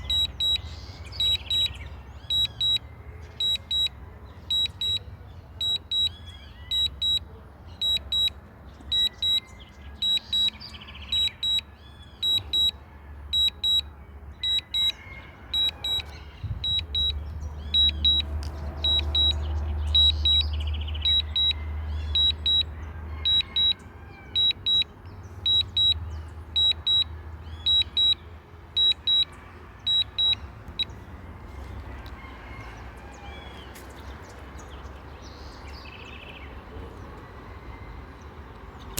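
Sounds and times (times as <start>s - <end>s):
high double warning beeps: 0.0s - 28.2s, 28.8s - 31.0s
birds chirping: 0.0s - 38.9s.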